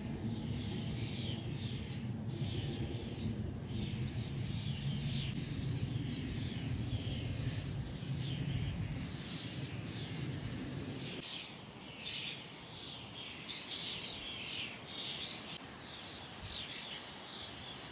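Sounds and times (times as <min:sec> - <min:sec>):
low rumbling noise: 0:00.0 - 0:11.2
small birds chirping and trilling: 0:00.0 - 0:17.9.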